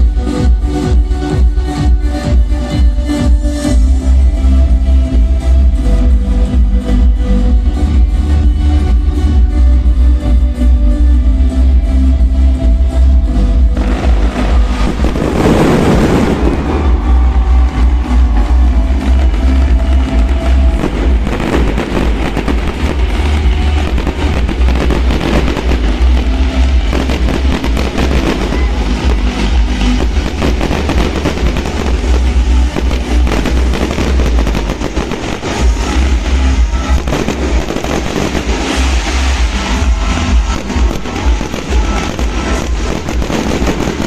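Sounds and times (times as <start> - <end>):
loud music with heavy bass: 0.0 - 44.0
fireworks bangs and crackles: 13.6 - 44.0.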